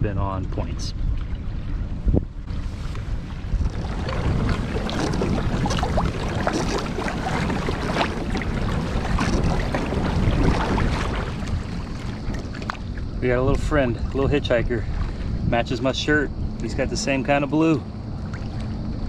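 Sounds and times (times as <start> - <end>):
wind rumbling on microphone: 0.0 - 19.0
small ticks and splashes: 3.6 - 13.2, 16.5 - 19.0.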